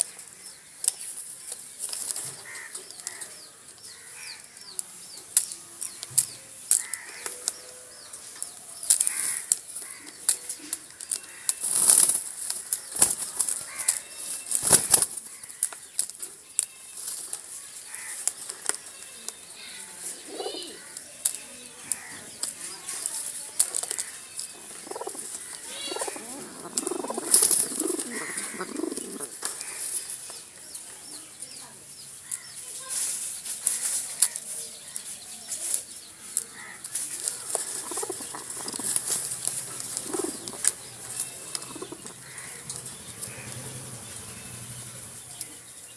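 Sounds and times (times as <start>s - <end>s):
pigeons cooing: 20.1s - 21.0s, 24.6s - 29.5s, 37.4s - 44.1s
pigeon wings flapping: 37.5s - 40.7s.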